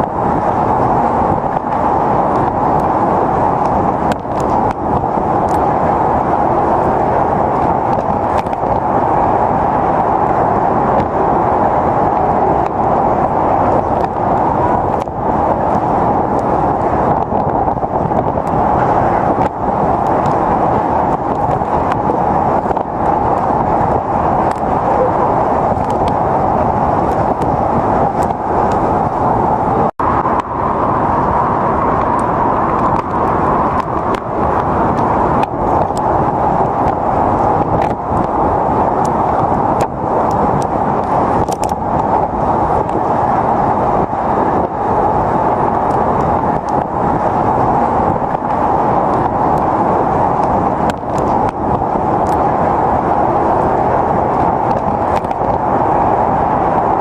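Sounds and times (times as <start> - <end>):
loud rush of wind and rain: 0.0 - 57.0.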